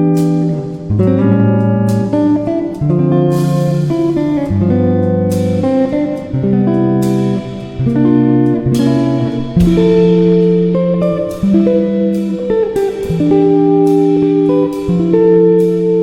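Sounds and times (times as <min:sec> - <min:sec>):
strummed guitar music: 0:00.0 - 0:16.0.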